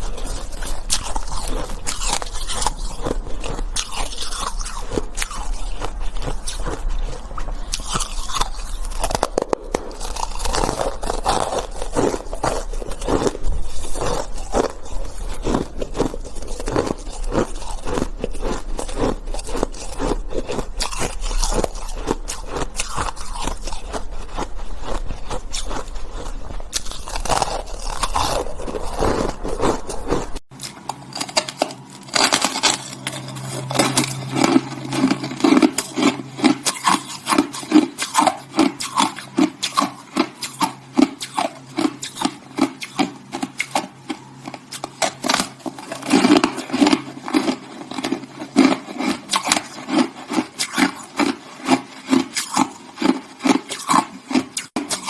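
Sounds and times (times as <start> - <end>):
low hum: 0.0 - 37.7
person crunching shaved ice: 0.0 - 55.0.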